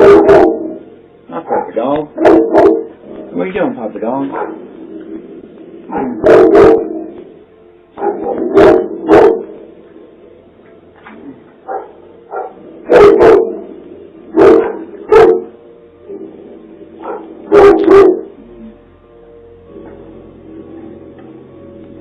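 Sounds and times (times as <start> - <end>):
dog barking: 0.0 - 0.8, 1.4 - 3.0, 4.3 - 4.6, 5.9 - 7.1, 8.0 - 9.6, 11.7 - 13.7, 14.3 - 15.6, 17.0 - 18.3.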